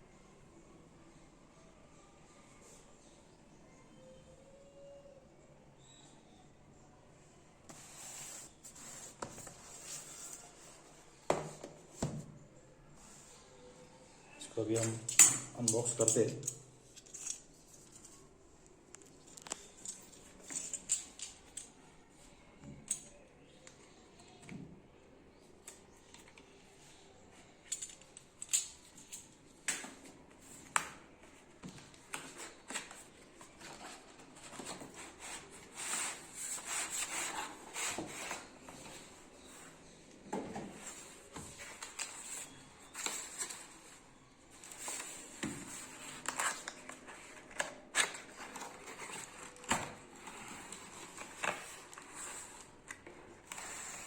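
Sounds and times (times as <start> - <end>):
packaging rustling: 44.6 - 54.0.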